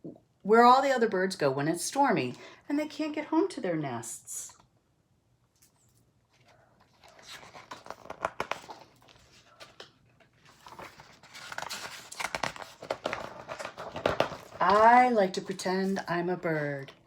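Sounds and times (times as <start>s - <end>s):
paper pages rustling: 5.6s - 16.7s.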